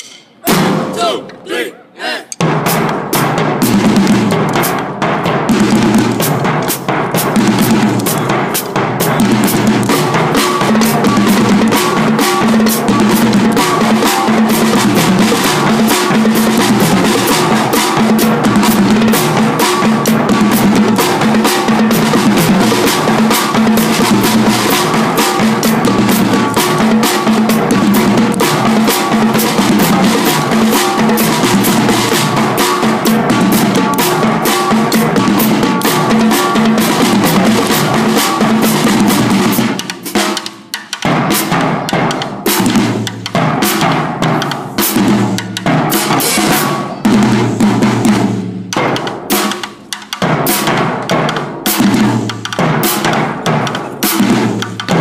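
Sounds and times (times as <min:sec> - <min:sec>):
marching drumline: 0:00.0 - 0:55.0.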